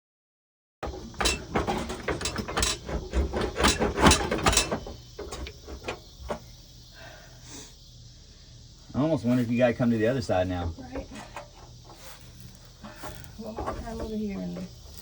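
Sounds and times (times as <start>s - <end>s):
metallic knocks: 0.8s - 6.5s.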